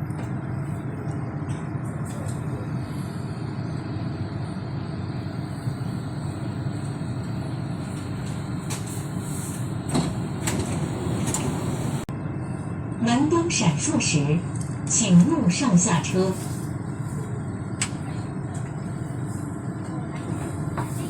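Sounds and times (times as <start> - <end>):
train rumbling while braking: 0.0 - 21.0
train clicks: 9.9 - 12.0.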